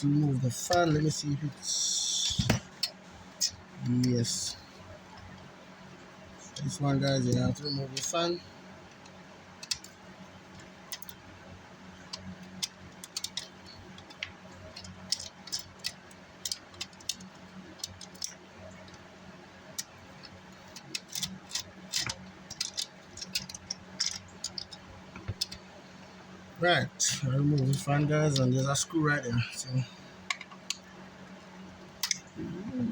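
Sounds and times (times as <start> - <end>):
steady low hum: 0.0 - 32.9.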